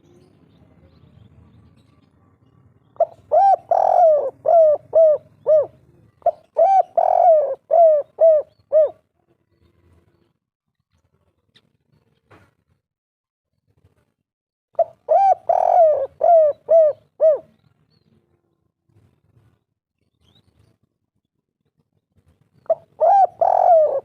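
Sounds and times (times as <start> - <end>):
dove cooing: 3.0 - 9.0, 14.8 - 17.6, 22.7 - 24.0.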